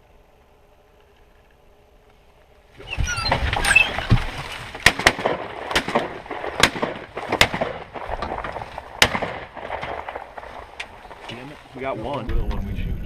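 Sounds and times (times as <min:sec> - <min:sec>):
shotgun shots: 0:04.7 - 0:11.2.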